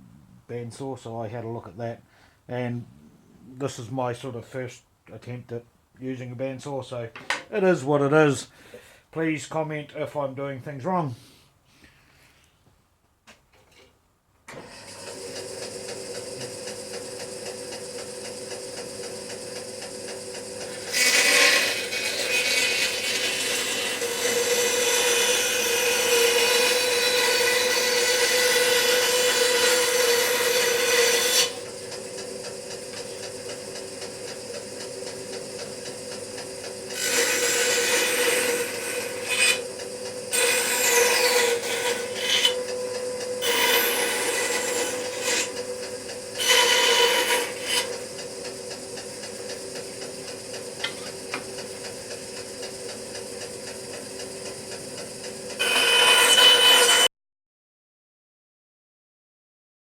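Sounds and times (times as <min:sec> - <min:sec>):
bandsaw blade cutting wood: 0:14.5 - 0:48.1, 0:55.5 - 0:57.1
bandsaw humming: 0:14.5 - 0:57.1.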